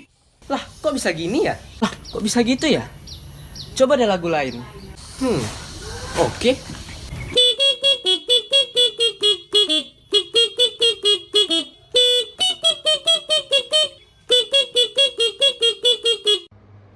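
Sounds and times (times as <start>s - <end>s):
horn playing melody of toots: 7.3s - 16.5s.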